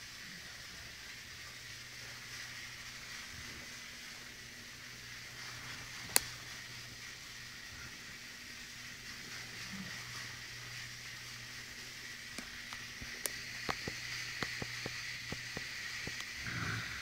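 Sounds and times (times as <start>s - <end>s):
low hum and hiss: 0.0s - 17.0s
woman snoring faintly: 16.4s - 17.0s.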